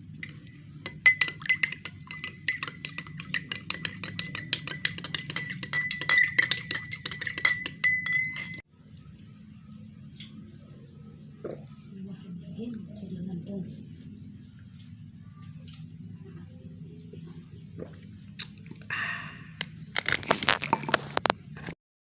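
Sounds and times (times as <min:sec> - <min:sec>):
spoon clinking in a glass: 0:00.1 - 0:08.6.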